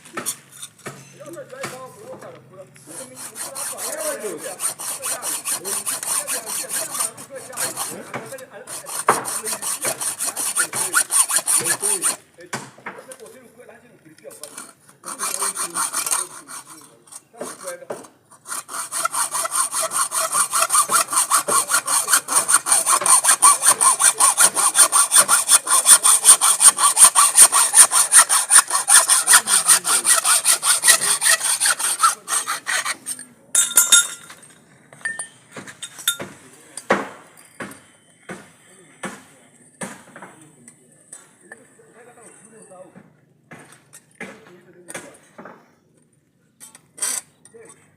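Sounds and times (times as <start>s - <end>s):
hacksaw cutting metal pipe: 0.1s - 1.0s, 2.9s - 12.2s, 14.4s - 34.5s, 35.1s - 38.4s, 46.6s - 47.4s.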